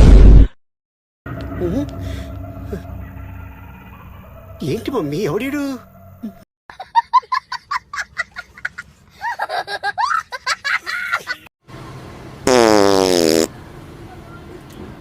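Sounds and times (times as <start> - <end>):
laughter-like voice sounds: 6.2 - 11.5
buzzy fart sound: 12.4 - 13.5.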